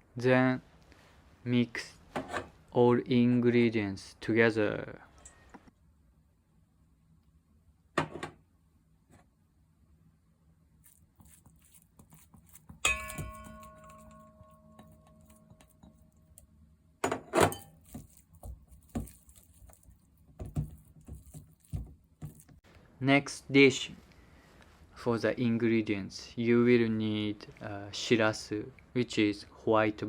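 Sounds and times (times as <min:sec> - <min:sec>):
ringing tone from a strike: 0:12.8 - 0:15.6
utensils knocking against a bowl: 0:12.8 - 0:16.0, 0:17.0 - 0:18.2.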